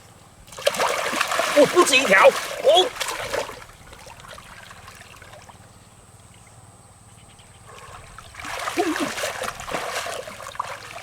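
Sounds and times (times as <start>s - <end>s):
water splashing: 0.4s - 5.6s, 7.7s - 11.0s
water trickling: 0.4s - 5.7s, 7.7s - 11.0s.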